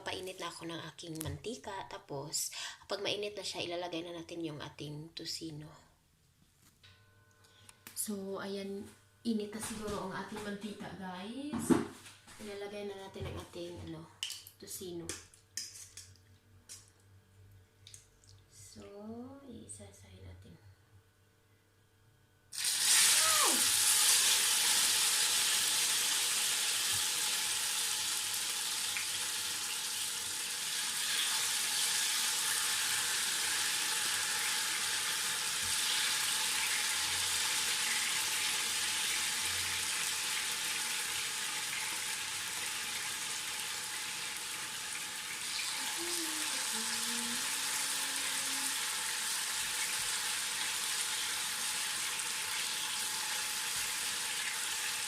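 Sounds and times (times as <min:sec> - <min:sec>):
chicken sizzling in hot oil: 0:22.5 - 0:55.0.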